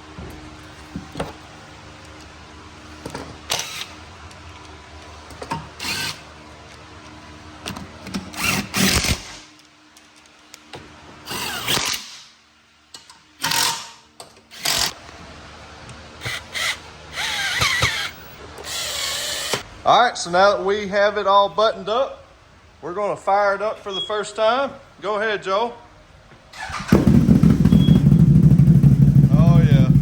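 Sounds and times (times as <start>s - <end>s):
cordless drill driving fasteners: 3.5s - 4.0s, 5.8s - 6.2s, 8.3s - 9.4s, 14.5s - 15.0s, 16.2s - 19.6s.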